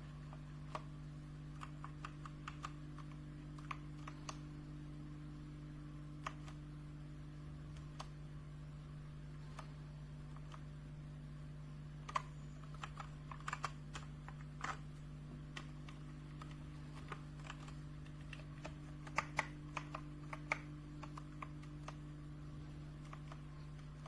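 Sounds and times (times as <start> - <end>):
steady low hum: 0.0 - 24.0
mechanical keyboard typing: 1.5 - 4.4, 6.2 - 6.6, 12.0 - 14.9, 15.5 - 22.1, 22.9 - 24.0.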